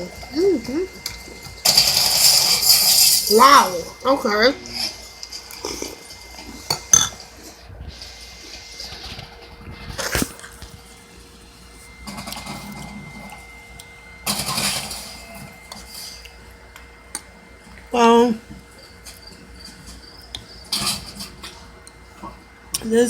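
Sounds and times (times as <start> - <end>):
person chewing cereal: 4.6 - 14.0.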